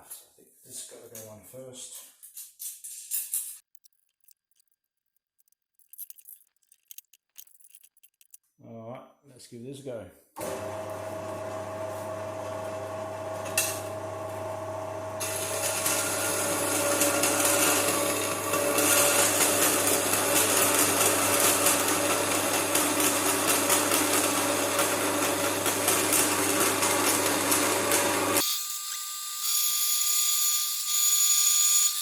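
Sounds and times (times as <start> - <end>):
bandsaw motor hum: 10.4 - 32.0.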